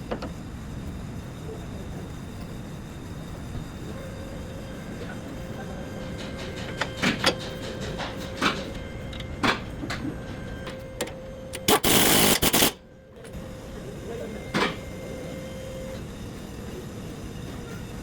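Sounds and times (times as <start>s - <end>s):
loud burst of noise: 11.6s - 12.8s.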